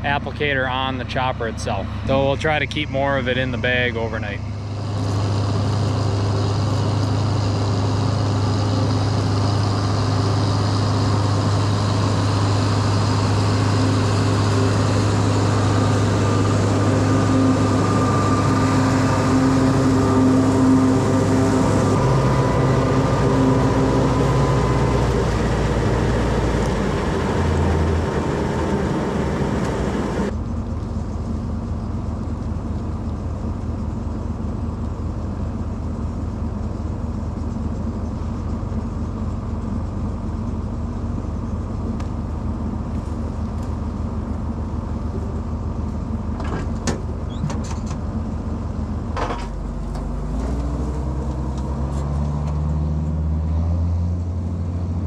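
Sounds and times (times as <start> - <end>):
farm vehicle engine running: 0.0 - 55.0.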